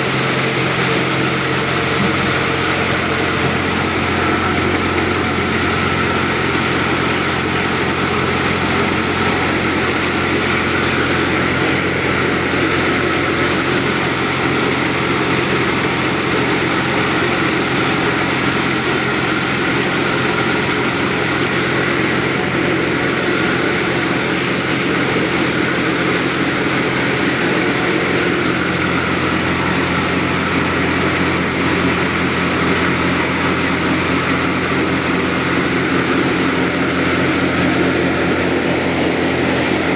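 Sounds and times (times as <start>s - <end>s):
grain machine humming and rushing: 0.0s - 39.9s.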